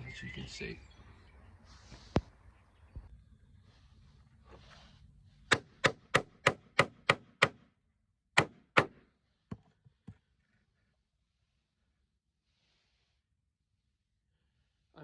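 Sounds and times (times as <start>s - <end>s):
hammer striking nail into timber: 5.5s - 7.7s, 8.4s - 9.7s.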